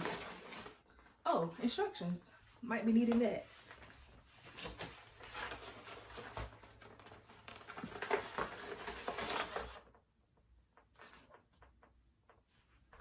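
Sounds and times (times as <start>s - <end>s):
packaging rustling and crinkling: 0.0s - 1.0s, 3.5s - 10.0s.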